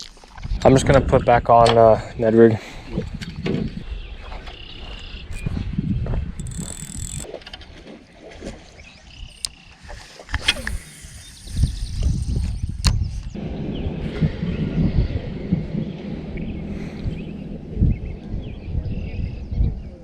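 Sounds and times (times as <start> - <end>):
fishing tackle clicks and rustles: 6.3 - 8.6, 9.2 - 13.4.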